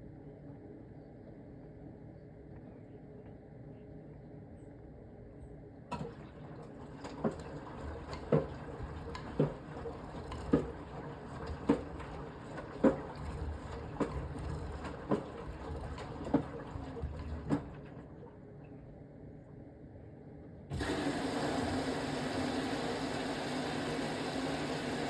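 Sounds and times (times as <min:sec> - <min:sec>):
washing machine drum turning: 0:05.9 - 0:18.2.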